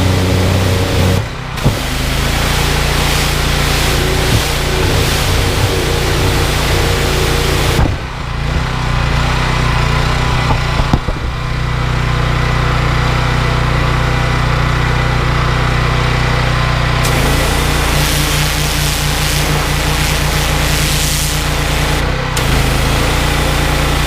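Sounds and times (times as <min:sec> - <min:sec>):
water jet hissing: 0:00.0 - 0:08.2, 0:17.0 - 0:24.0
petrol engine running: 0:00.0 - 0:24.0.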